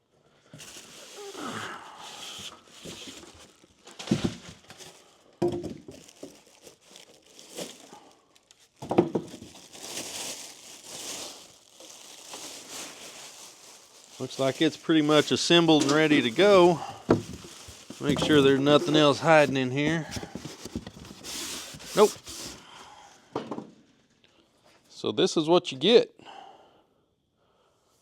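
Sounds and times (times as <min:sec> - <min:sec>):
packaging crinkling: 0:00.5 - 0:22.8.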